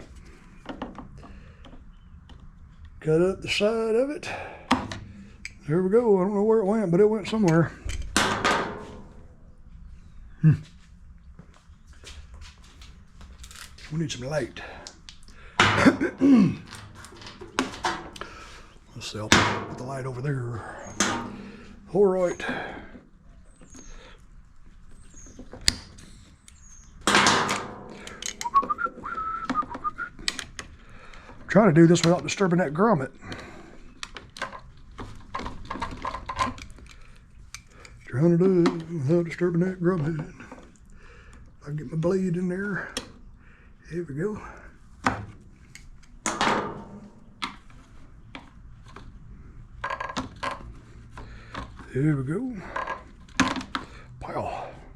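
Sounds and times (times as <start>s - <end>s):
man whistling a tune: 28.4s - 30.3s.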